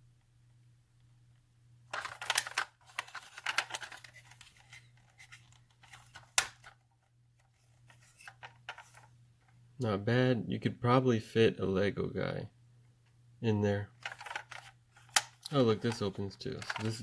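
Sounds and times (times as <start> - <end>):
plastic toy scraping and clicking: 14.0 - 17.0.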